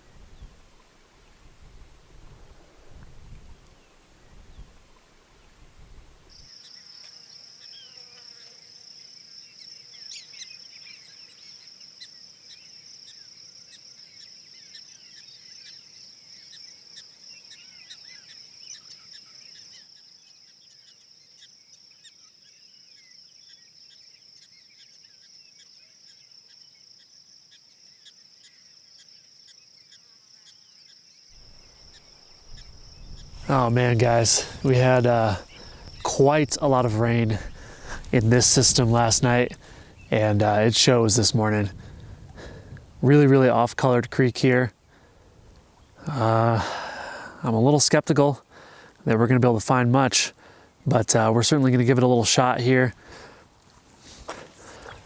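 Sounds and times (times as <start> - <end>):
insects trilling: 6.2 - 55.0
bird chirps: 31.4 - 40.5.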